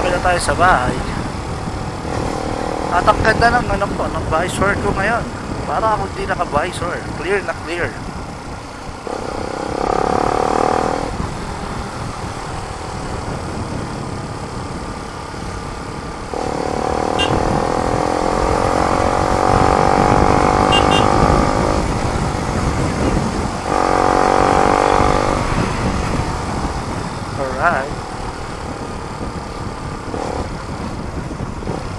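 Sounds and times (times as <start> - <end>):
motorcycle engine exhaust note: 8.0 - 31.9.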